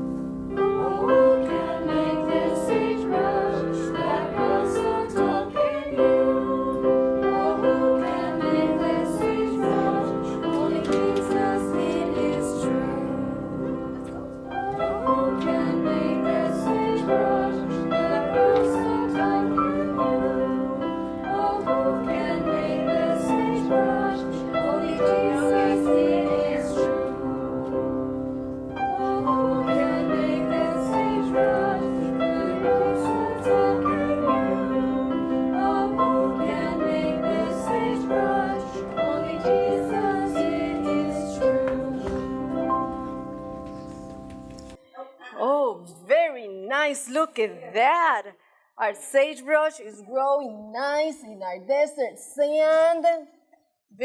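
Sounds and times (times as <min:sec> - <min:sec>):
piano accompaniment: 0:00.0 - 0:44.9
women singing children's song: 0:00.8 - 0:28.0, 0:28.8 - 0:42.5.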